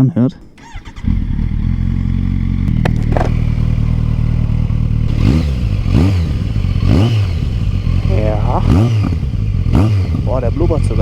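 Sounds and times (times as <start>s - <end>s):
motorcycle engine idling and revving: 0.4s - 11.0s.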